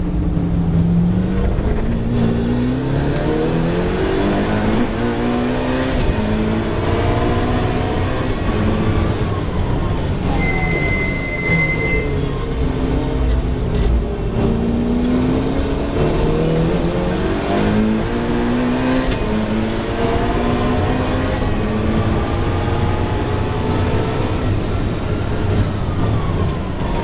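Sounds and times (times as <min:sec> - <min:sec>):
race car engine revving: 0:00.0 - 0:27.0.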